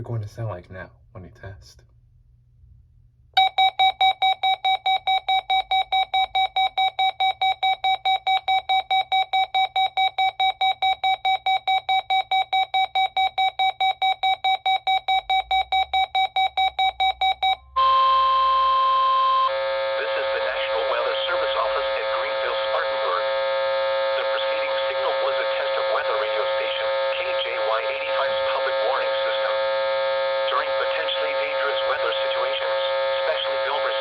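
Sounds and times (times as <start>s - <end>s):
rapid alert beeps: 3.4s - 18.0s
steady warning alarm tone: 3.4s - 34.0s
radio static: 19.5s - 34.0s.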